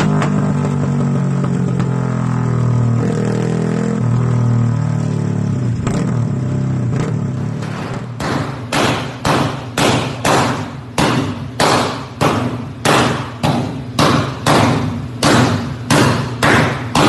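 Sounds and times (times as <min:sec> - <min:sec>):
motorcycle engine idling: 0:00.0 - 0:03.1, 0:12.5 - 0:17.0
sharp exhaust pops: 0:06.9 - 0:17.0.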